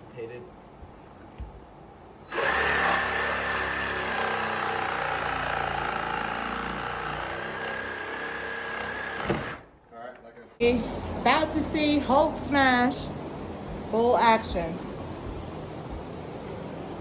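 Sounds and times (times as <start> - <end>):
power saw cutting wood: 2.3 - 9.7.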